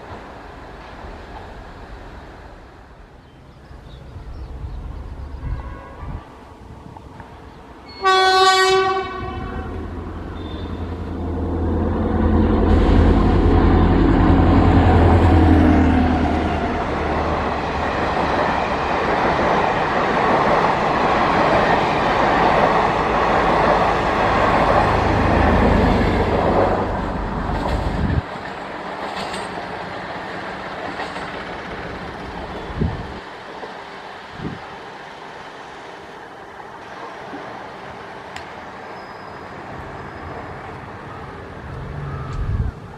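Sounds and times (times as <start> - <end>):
diesel train engine rumbling: 0.0 - 42.9
train horn blast: 5.4 - 6.3, 7.9 - 11.0.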